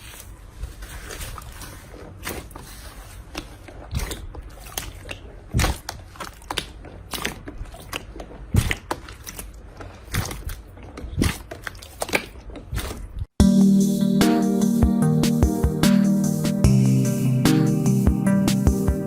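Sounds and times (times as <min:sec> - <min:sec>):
slime squelching: 0:00.0 - 0:13.4.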